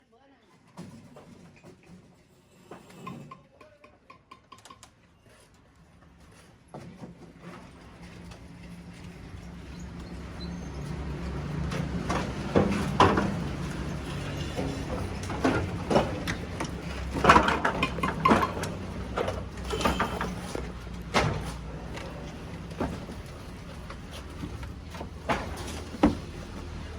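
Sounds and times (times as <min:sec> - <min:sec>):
knocks and clanks: 0:10.8 - 0:26.9.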